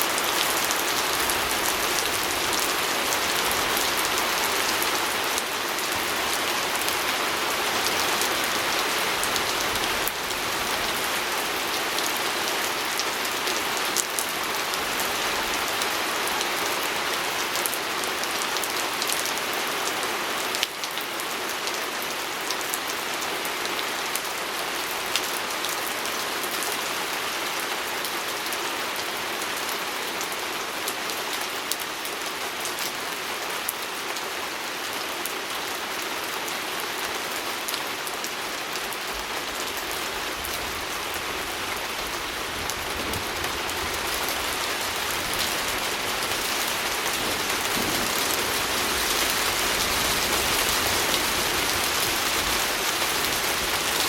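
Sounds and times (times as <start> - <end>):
rain on a window: 37.4 - 54.0.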